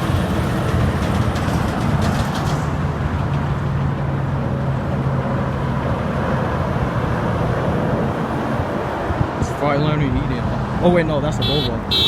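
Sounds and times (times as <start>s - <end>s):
trucks driving past: 0.0s - 12.0s
tyre and engine noise: 0.0s - 12.0s.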